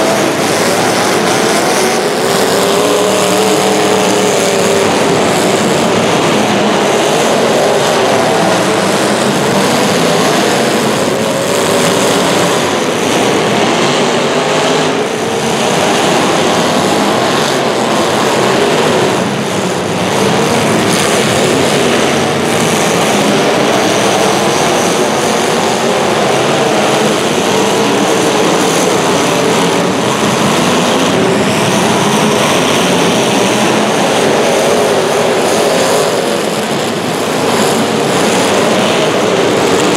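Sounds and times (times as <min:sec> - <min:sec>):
racing engines revving: 0:00.0 - 0:39.9.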